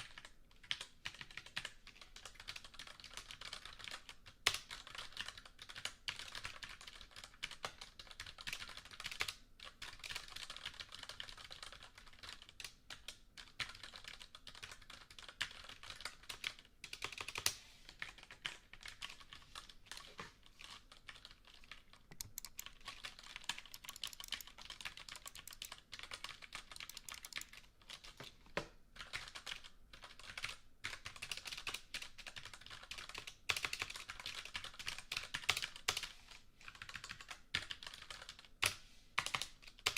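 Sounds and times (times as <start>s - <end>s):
typing on a computer keyboard: 0.0s - 39.9s.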